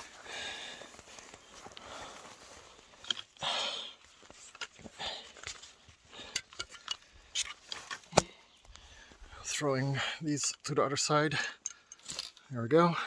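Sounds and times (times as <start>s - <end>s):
footsteps through brush: 0.0s - 6.3s
trekking poles clicking: 0.9s - 8.8s, 11.4s - 12.5s.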